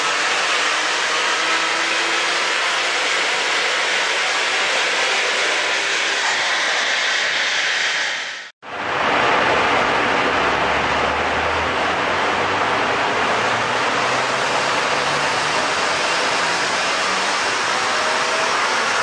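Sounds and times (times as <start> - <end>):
car engine on dyno: 0.0 - 19.0
loud steady rushing noise: 0.0 - 19.0.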